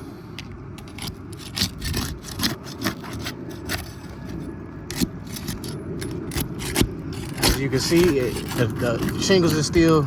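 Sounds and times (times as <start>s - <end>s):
crowbar scraping on shingles: 5.0s - 10.0s.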